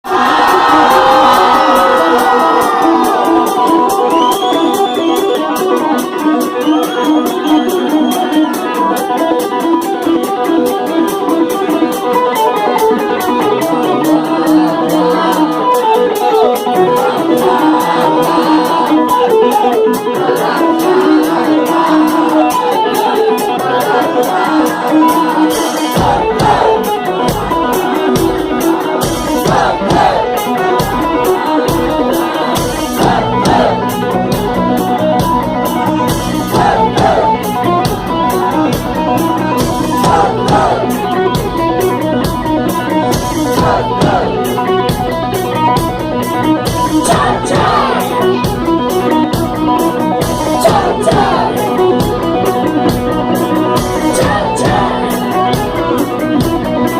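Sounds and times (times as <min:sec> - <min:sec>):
drums: 0:00.0 - 0:56.9
electric guitar riff: 0:00.0 - 0:56.9
bass line: 0:25.9 - 0:28.5, 0:32.7 - 0:56.8.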